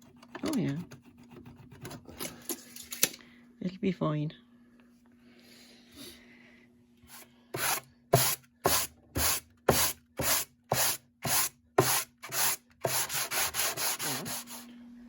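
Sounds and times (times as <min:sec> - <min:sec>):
wood being sanded by hand: 0:07.6 - 0:14.7.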